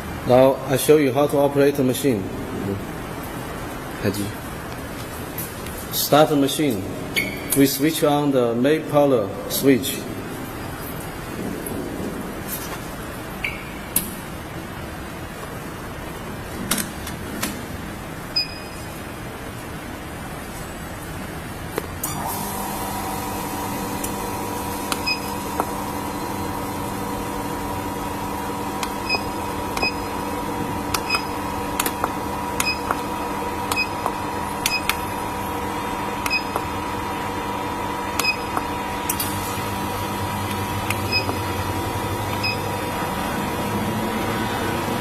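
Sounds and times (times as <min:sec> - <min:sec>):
welding machine humming: 0:22.0 - 0:45.0.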